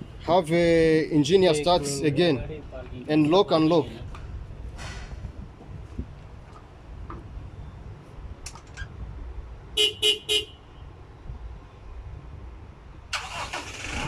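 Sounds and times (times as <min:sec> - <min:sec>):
car horn chirps: 0:09.8 - 0:10.7
car engine cranking and starting: 0:13.1 - 0:14.0.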